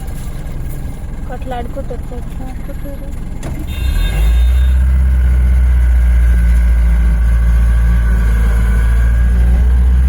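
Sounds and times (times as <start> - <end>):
vehicle engine running: 0.0 - 10.0.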